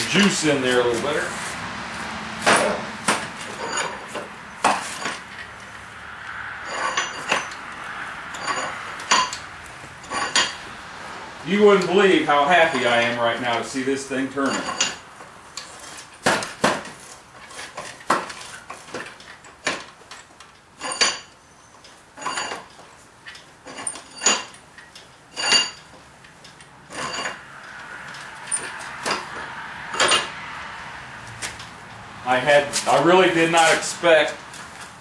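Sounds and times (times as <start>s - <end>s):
metal vise clanking: 2.4s - 5.7s, 6.6s - 7.6s, 8.3s - 10.7s, 12.6s - 30.4s.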